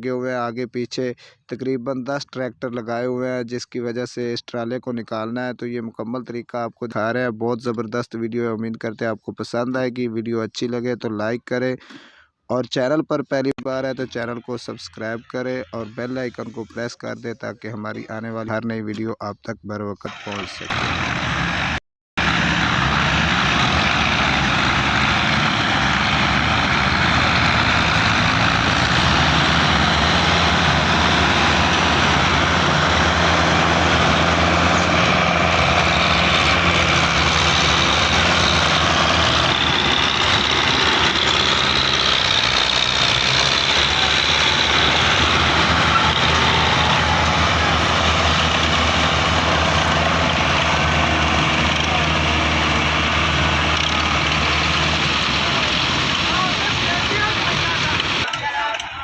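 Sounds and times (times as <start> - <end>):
tractor diesel engines running: 20.1 - 59.0.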